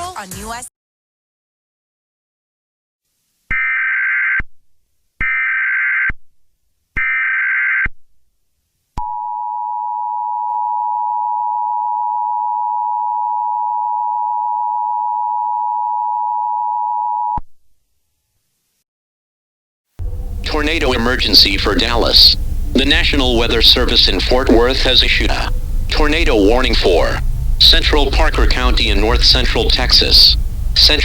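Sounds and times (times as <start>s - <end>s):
steady two-pitch attention tone: 20.0s - 31.0s
digital data tone bursts: 20.5s - 31.0s.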